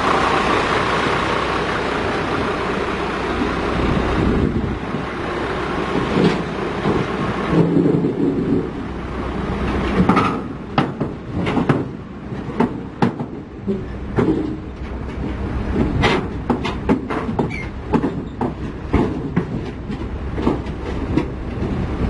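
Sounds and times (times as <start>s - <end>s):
heavy diesel machinery running: 0.0s - 22.0s
sharp metal clanks and knocks: 9.8s - 21.3s.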